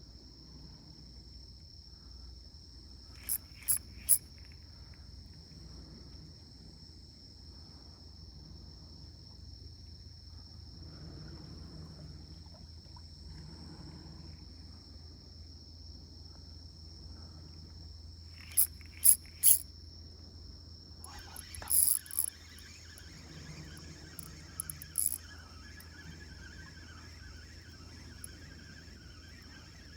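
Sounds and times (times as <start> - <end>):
high-pitched insect trill: 3.0 - 4.7, 18.3 - 20.0, 21.0 - 29.9.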